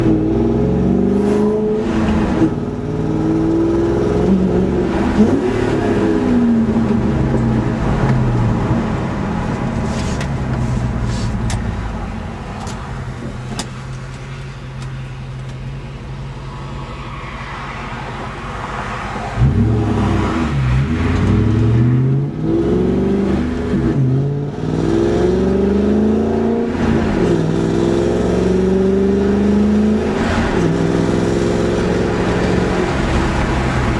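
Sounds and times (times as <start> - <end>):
car exhaust revving: 19.3 - 33.9.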